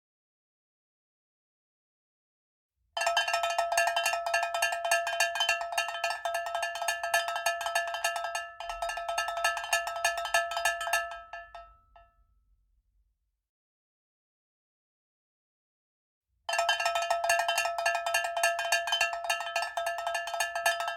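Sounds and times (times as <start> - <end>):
metal bell struck rapidly: 16.8 - 20.9.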